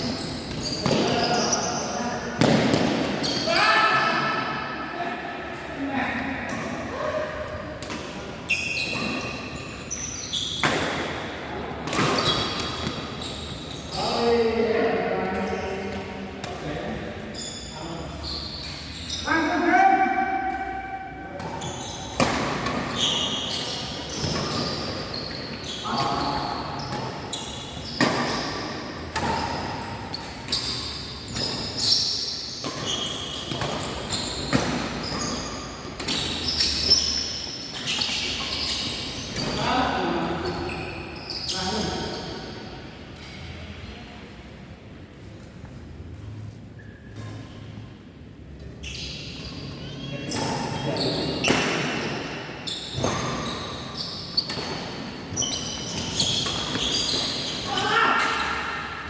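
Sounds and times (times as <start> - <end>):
shoes squeaking on court floor: 0.0 - 4.6, 6.4 - 19.7, 20.5 - 44.2, 45.2 - 59.0
sports hall noise: 0.0 - 59.0
rackets hitting shuttlecock: 2.4 - 3.2.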